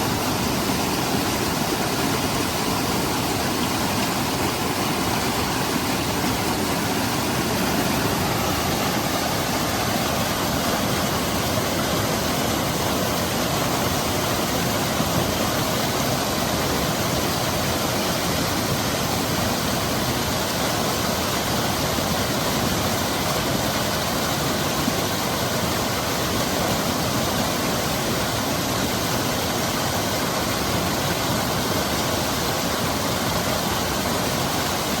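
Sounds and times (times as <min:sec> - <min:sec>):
stream flowing over rocks: 0:00.0 - 0:35.0.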